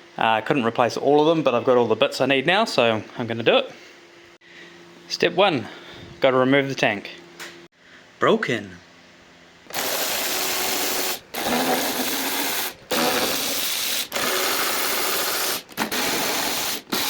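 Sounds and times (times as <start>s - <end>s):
power driver running in bursts: 9.7s - 17.0s.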